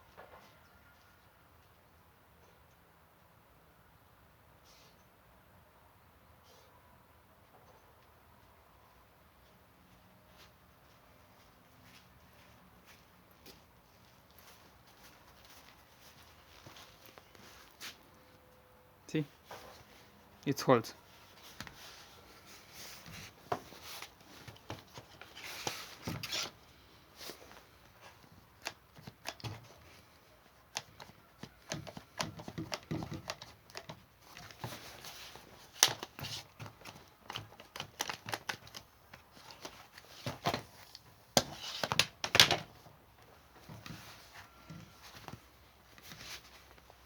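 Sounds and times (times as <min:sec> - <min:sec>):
rubber inner tube handling: 0:21.2 - 0:47.0.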